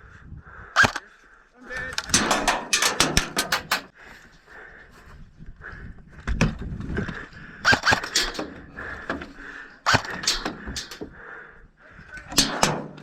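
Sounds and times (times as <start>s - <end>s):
airsoft guns firing: 7.7s - 8.4s.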